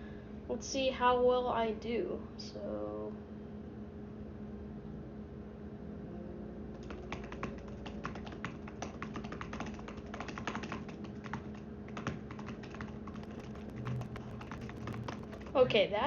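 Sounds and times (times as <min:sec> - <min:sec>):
keyboard keys clicking rapidly: 0:06.8 - 0:15.8.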